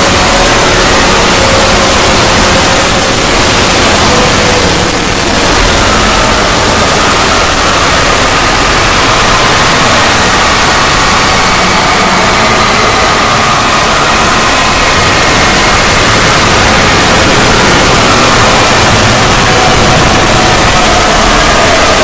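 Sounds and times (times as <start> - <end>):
faint drifting tones: 0.0 - 22.0
harsh distorted noise drone: 0.0 - 22.0.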